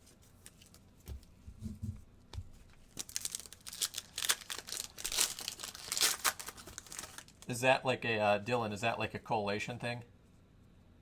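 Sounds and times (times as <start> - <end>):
foil wrapper tearing and crinkling: 2.9 - 7.5.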